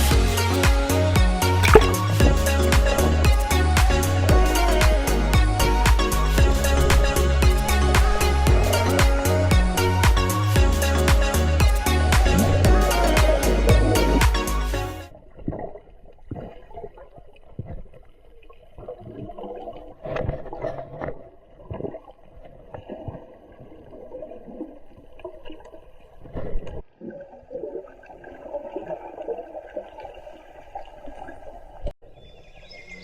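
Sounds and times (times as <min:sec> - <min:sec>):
low thumps and bumps: 0:01.6 - 0:03.3
water sloshing around boat: 0:01.6 - 0:03.4.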